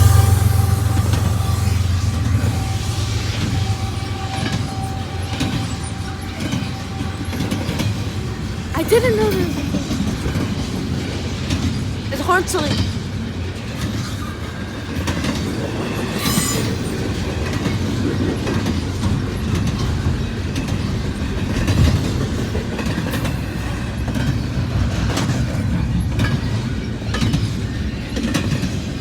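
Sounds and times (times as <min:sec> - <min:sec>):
sharp metallic clank: 0:00.0 - 0:08.0
freight train rumbling past: 0:00.0 - 0:29.0.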